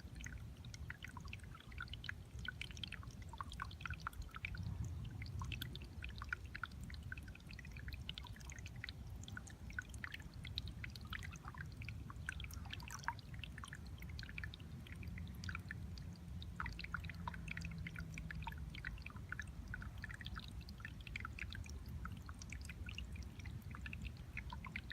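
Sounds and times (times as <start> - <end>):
water trickling and dripping: 0.0 - 24.9.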